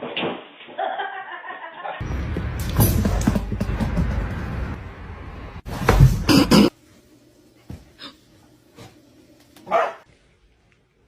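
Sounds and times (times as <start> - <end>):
dog barking: 9.7 - 10.1.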